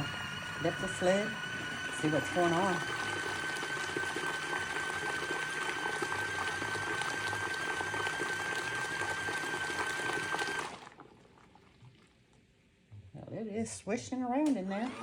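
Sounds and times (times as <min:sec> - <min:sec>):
high motor whine: 0:00.0 - 0:06.3
water swishing in washing machine: 0:00.0 - 0:12.4.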